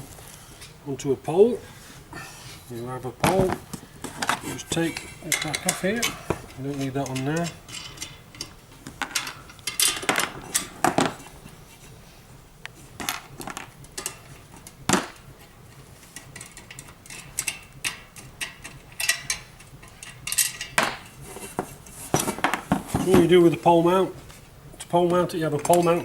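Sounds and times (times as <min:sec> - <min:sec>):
bolts and nuts clinking: 0:04.2 - 0:11.2, 0:16.2 - 0:21.2, 0:24.8 - 0:26.0
metal clicks and knocks: 0:04.2 - 0:11.2, 0:16.2 - 0:21.1.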